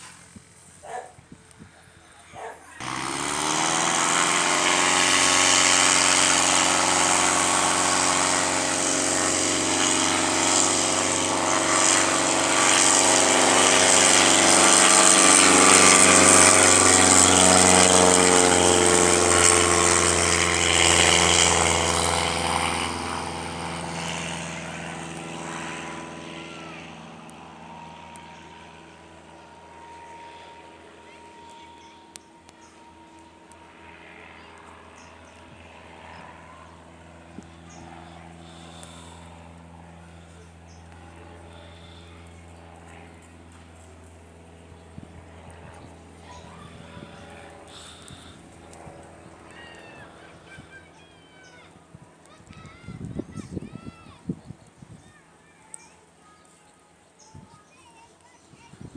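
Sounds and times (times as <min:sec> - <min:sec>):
propeller airplane engine: 0:00.0 - 0:58.9.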